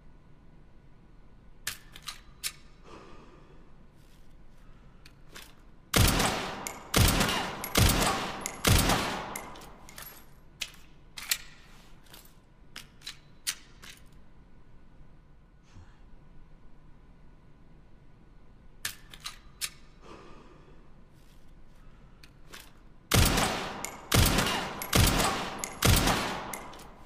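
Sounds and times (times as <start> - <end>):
handgun shots with echo: 6.0 - 9.8, 23.1 - 27.0
sharp light clicks: 6.5 - 11.5, 23.1 - 27.0.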